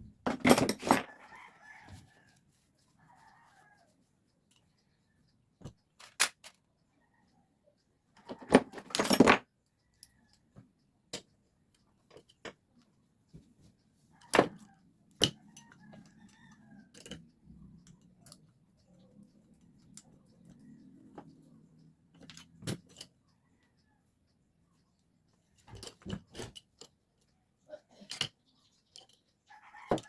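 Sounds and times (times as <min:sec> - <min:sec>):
metal tools clinking on workbench: 0:00.3 - 0:01.2, 0:08.3 - 0:09.5.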